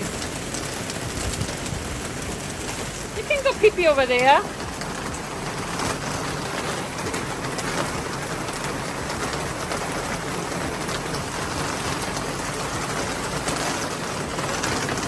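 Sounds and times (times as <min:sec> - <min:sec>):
heavy rain splashing on ground: 0:00.0 - 0:15.0.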